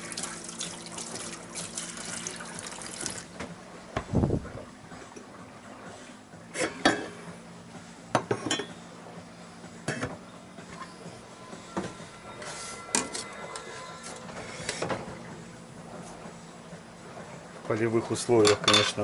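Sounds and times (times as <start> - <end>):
dishes and cutlery clattering: 8.2 - 8.8, 18.4 - 19.0.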